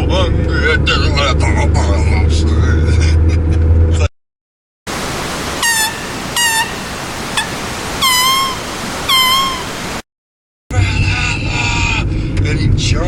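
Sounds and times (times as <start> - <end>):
high animal calls sliding down: 4.9 - 10.0
steady rushing noise: 4.9 - 10.0.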